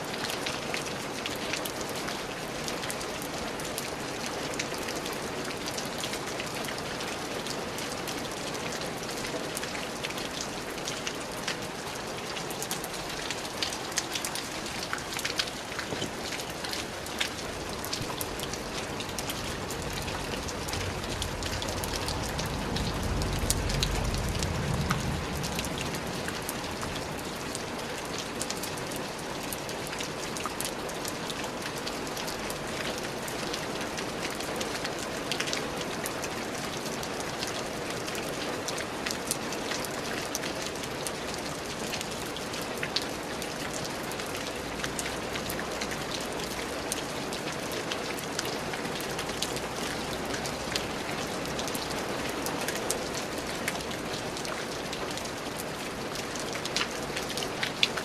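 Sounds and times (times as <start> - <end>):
steady rain falling: 0.0 - 58.0
low rumble: 19.2 - 27.3.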